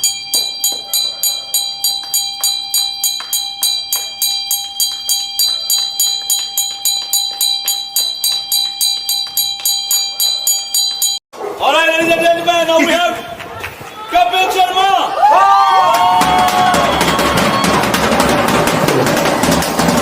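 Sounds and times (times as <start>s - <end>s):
metal hand bell ringing: 0.0s - 11.2s.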